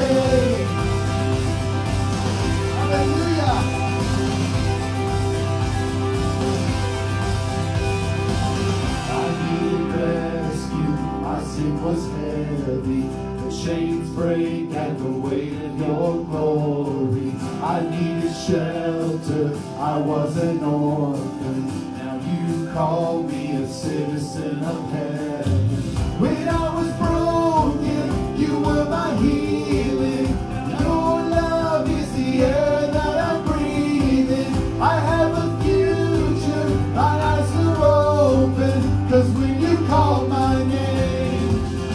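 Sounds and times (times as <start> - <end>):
person singing: 0.0 - 4.8, 8.9 - 41.9
bass and steady beat: 0.0 - 13.6, 25.5 - 41.9
worship band music: 0.0 - 41.9.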